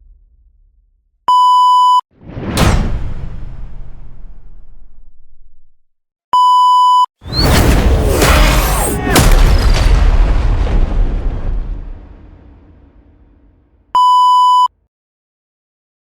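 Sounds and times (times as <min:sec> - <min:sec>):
cinematic impact with rumbling boom: 0:00.0 - 0:01.2, 0:02.2 - 0:05.7, 0:07.3 - 0:13.9
short steady beep: 0:01.3 - 0:02.0, 0:06.4 - 0:07.1, 0:14.0 - 0:14.7.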